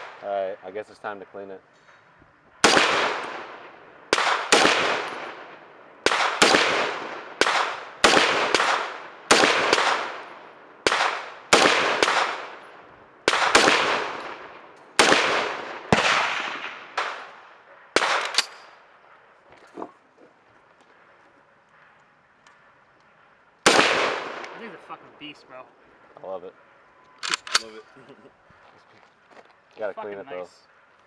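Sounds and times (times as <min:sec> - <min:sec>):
gunshots echoing: 0:02.6 - 0:18.8, 0:23.6 - 0:24.9.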